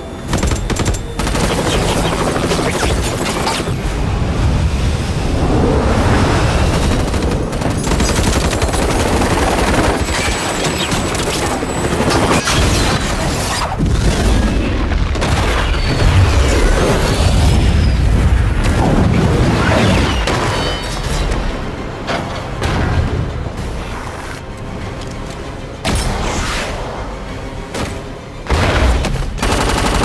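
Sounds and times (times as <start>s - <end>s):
film score: 0.0s - 30.0s
automatic gunfire: 29.4s - 30.0s.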